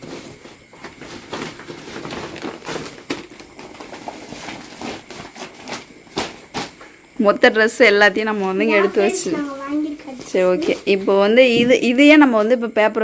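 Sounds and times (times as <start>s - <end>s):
packaging rustling and crinkling: 0.0s - 7.0s.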